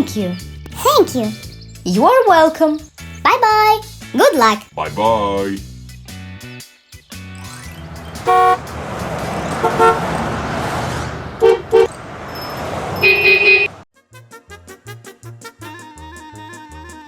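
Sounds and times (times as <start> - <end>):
children's music: 0.0 - 9.8, 14.0 - 17.0
short horn toots: 8.2 - 8.8, 9.6 - 10.1.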